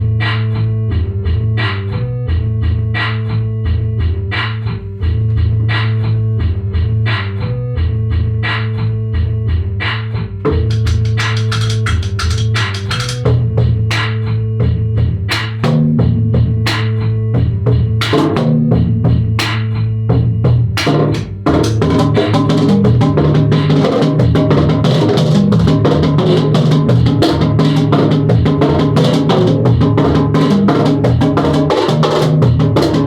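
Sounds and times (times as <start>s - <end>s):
bass guitar: 0.0s - 33.0s
drum kit beat: 2.3s - 33.0s.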